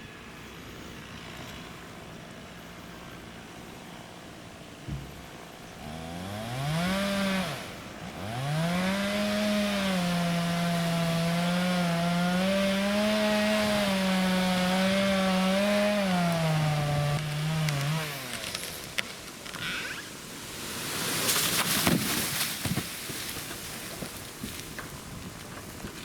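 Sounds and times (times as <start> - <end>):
chainsaw cutting wood: 5.8 - 20.1, 20.9 - 24.9.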